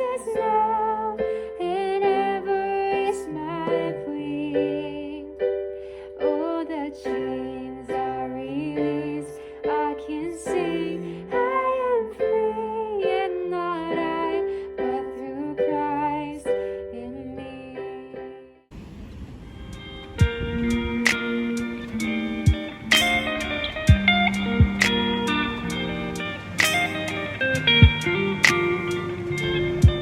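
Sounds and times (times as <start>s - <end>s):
gentle melody on plucked strings: 19.7s - 30.0s.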